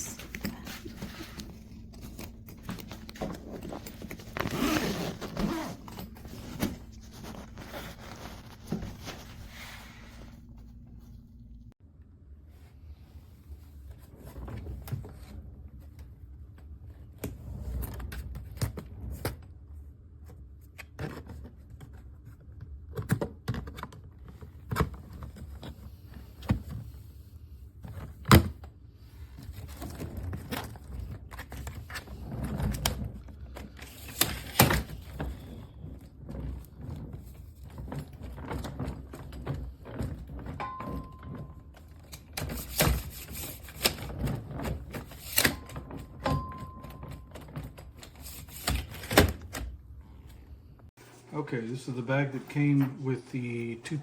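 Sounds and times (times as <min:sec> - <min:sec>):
luggage being moved: 0:00.0 - 0:10.6, 0:29.3 - 0:49.5.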